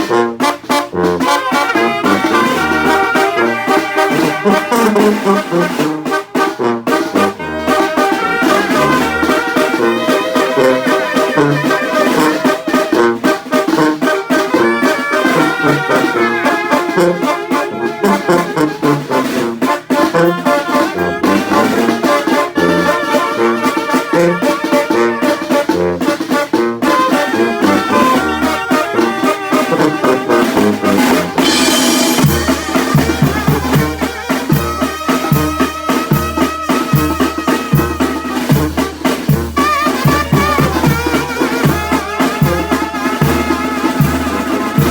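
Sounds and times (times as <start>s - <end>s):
brass band playing: 0.0s - 44.9s
percussion beat: 0.0s - 44.9s
trumpets and trombones melody: 0.0s - 44.9s
cymbal crash: 29.2s - 34.2s.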